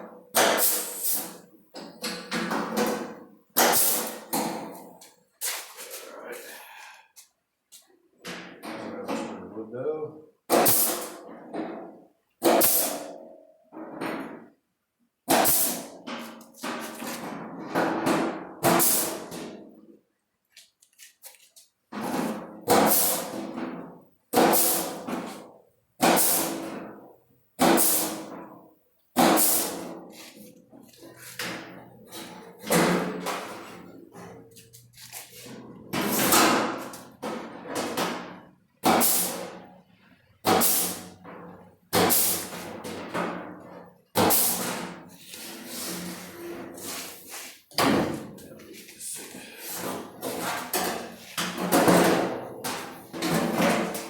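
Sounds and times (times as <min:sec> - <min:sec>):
knocks on car sheet metal: 0:02.4 - 0:04.8, 0:10.5 - 0:13.2, 0:15.2 - 0:16.2, 0:17.7 - 0:19.6, 0:22.0 - 0:25.4, 0:26.0 - 0:26.8, 0:27.6 - 0:28.5, 0:29.2 - 0:30.0, 0:41.9 - 0:43.5.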